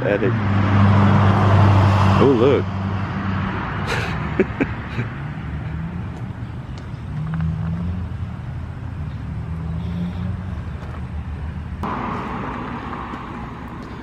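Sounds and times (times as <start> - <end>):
road traffic engine rumble: 0.0 - 14.0
loud rush of noise: 11.8 - 13.9.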